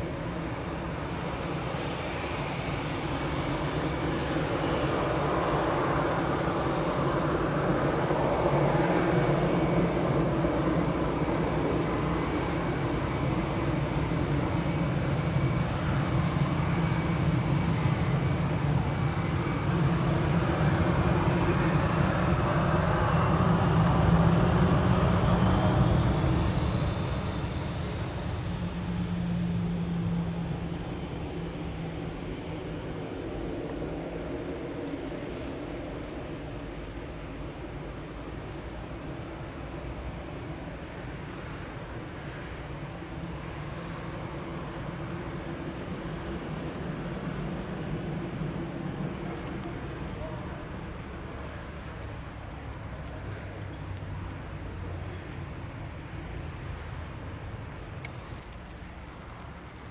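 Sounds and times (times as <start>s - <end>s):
jet engines at takeoff power: 0.0s - 59.9s.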